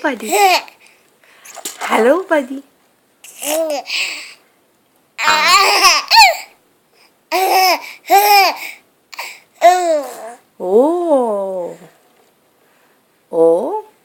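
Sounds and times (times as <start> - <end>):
baby squealing: 5.2 - 6.5.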